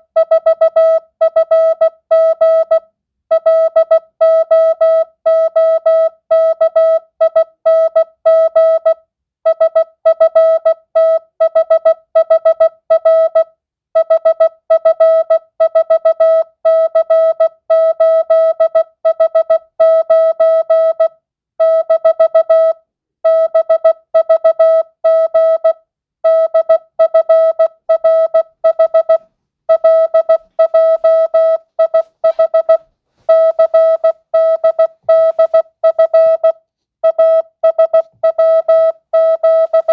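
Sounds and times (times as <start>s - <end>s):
morse code beeps: 26.3s - 39.9s.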